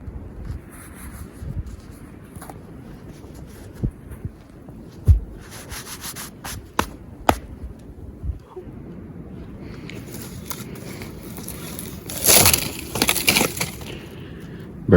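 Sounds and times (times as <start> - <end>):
dull thumps: 5.0 - 5.5
sharp cracks: 9.9 - 14.2.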